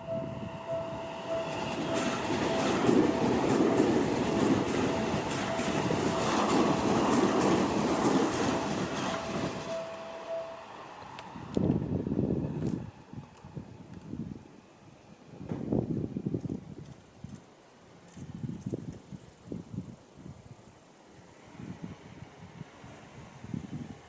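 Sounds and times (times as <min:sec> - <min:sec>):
level crossing warning bell: 0:00.0 - 0:10.9
train wheels clicking over rail joints: 0:00.5 - 0:10.4.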